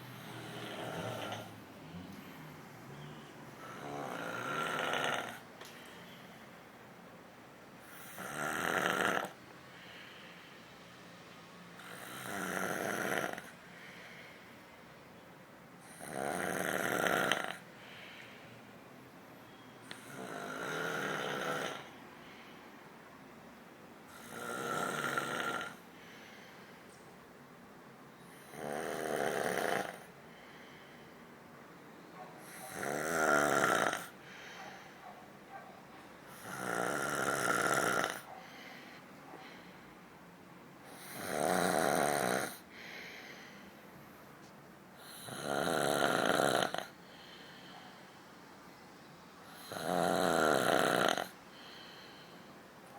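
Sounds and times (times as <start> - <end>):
person snoring: 0.1 - 5.5, 7.9 - 9.4, 11.8 - 13.5, 15.9 - 17.6, 19.9 - 21.9, 24.1 - 25.8, 28.3 - 30.1, 32.7 - 34.1, 36.4 - 38.3, 40.9 - 42.6, 45.0 - 47.0, 49.6 - 51.9.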